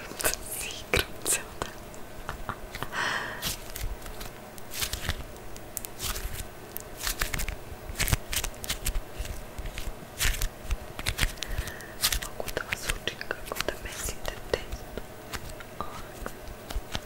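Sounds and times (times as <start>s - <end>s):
putty clicks and crackles: 2.7s - 17.0s.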